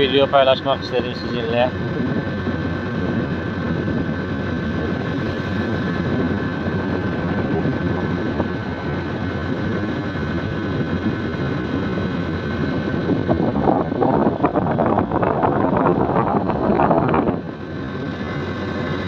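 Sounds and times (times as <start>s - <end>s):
motorcycle engine drone: 0.0s - 19.0s.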